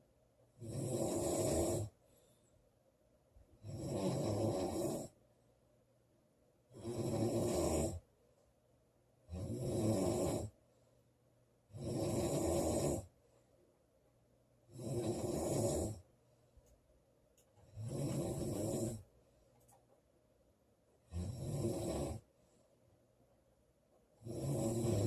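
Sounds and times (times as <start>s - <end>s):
quiet breaths: 0.0s - 25.0s
woman snoring loudly: 0.6s - 1.9s, 3.6s - 5.2s, 6.7s - 8.0s, 9.3s - 10.5s, 11.7s - 13.1s, 14.7s - 16.0s, 17.7s - 19.0s, 21.1s - 22.3s, 24.2s - 25.0s.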